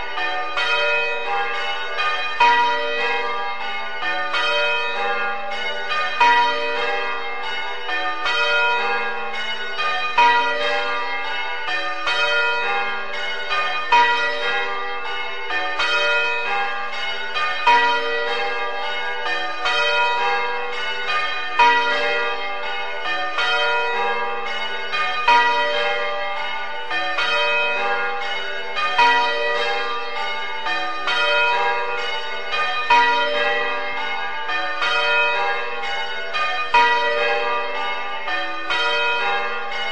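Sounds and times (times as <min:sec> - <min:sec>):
church bells ringing: 0:00.0 - 0:39.9.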